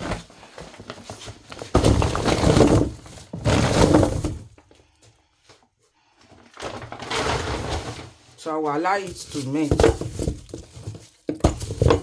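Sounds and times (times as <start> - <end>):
kitchen clatter: 9.1 - 12.0.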